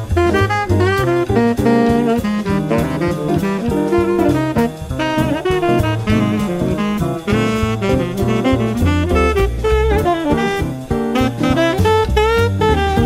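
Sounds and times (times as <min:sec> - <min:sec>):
bass: 0:00.0 - 0:13.0
drum kit: 0:00.0 - 0:13.0
saxophone playing fast lines: 0:00.0 - 0:13.0.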